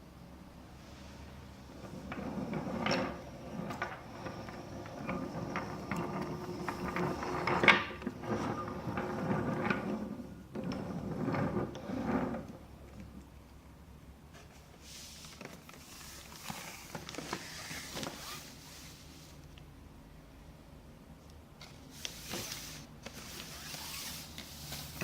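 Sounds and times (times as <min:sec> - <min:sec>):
toy train clattering on wooden track: 0:02.0 - 0:08.2.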